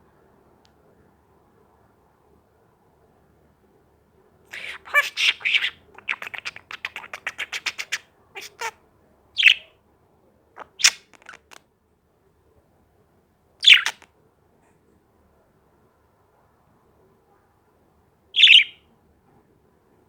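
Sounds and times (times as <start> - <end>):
harsh bird calls: 4.5 - 8.7, 9.4 - 9.7, 10.6 - 11.6, 13.6 - 14.1, 18.4 - 18.8
pet bird chattering: 4.5 - 8.7, 9.4 - 9.7, 10.6 - 11.6, 13.6 - 14.1, 18.4 - 18.8.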